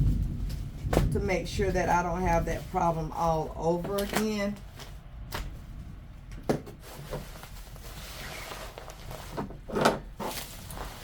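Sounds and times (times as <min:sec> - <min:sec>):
packing material rustling: 0:06.8 - 0:11.0.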